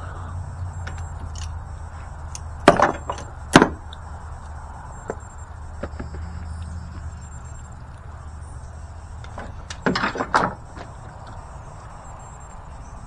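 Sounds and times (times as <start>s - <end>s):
engine idling hum: 0.0s - 13.0s
loud sharp knocks: 2.6s - 3.9s.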